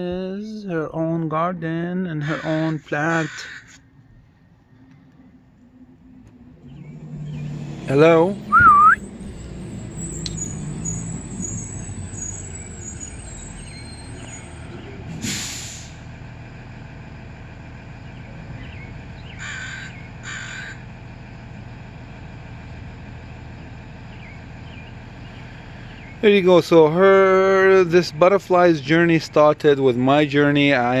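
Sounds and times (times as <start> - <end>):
distant traffic rumble: 0.0 - 31.0
crow cawing: 2.2 - 3.9, 19.4 - 20.9.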